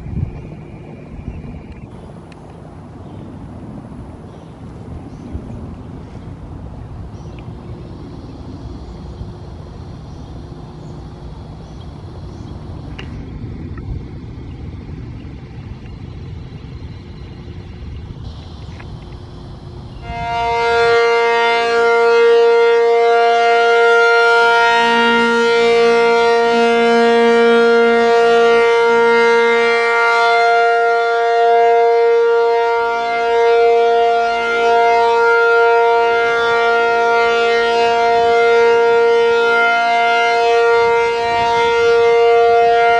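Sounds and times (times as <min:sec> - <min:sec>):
low background rumble: 0:00.0 - 0:23.0
warning siren steady tone: 0:06.4 - 0:42.9.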